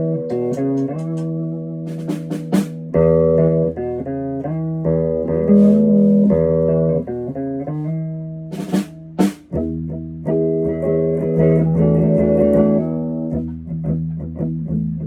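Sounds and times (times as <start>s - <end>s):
plucked guitar music: 0.0s - 15.0s
scratchy strokes across strings: 5.5s - 6.5s.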